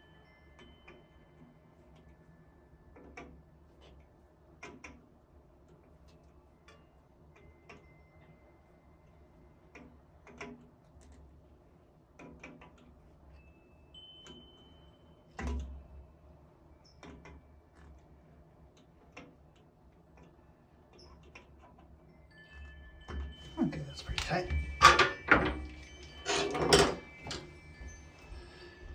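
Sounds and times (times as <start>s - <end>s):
metallic clicks and knocks of tools: 23.8s - 27.6s.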